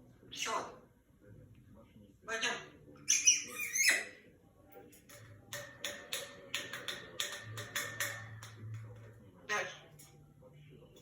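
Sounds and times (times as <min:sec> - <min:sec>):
parrot harsh calls: 0:02.3 - 0:04.2
parrot sharp taps and clicks: 0:05.1 - 0:09.1.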